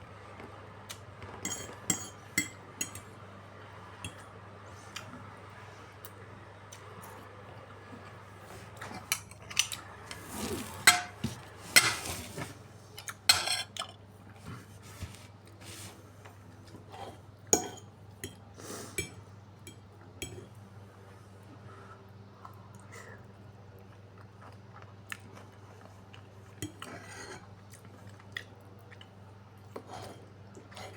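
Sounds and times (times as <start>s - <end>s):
cutlery and dishes clinking: 8.8s - 12.4s, 13.3s - 13.9s.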